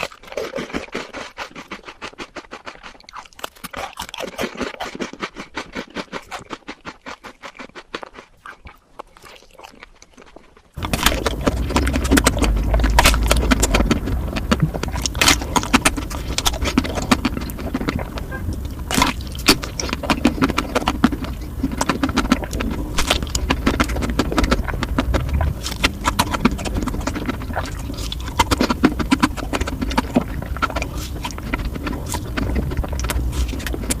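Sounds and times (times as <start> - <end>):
crunchy chewing: 0.0 - 34.0
low rumble: 10.8 - 34.0.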